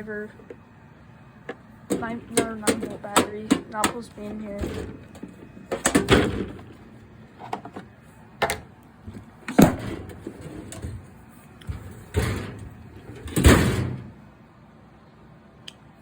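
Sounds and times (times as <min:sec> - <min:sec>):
quiet handling noise: 0:01.4 - 0:14.2
tools clattering in a toolbox: 0:01.9 - 0:06.8.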